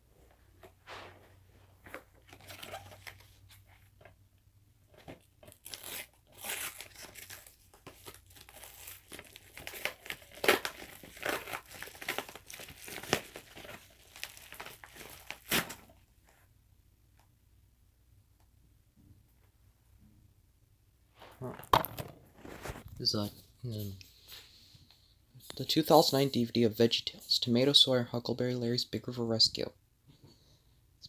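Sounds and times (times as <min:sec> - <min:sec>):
packaging tearing and crumpling: 0:05.4 - 0:16.0.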